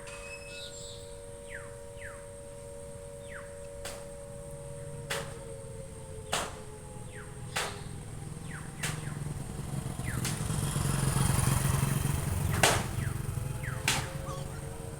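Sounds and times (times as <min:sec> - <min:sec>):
vehicle engine hum passing: 0:04.8 - 0:14.9.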